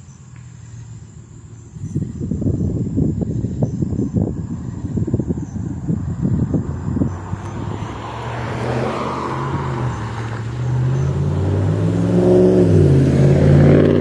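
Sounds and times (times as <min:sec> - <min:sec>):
vehicle engine accelerating: 0:05.7 - 0:14.0.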